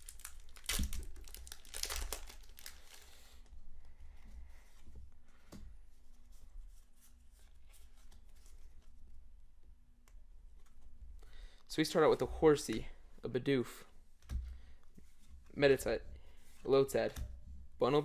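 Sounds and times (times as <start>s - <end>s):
foil wrapper tearing and crinkling: 0.0s - 3.2s.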